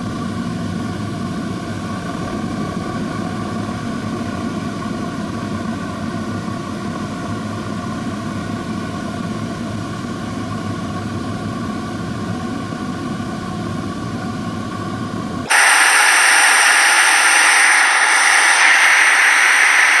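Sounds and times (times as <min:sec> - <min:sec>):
furnace burner roaring: 0:15.5 - 0:20.0.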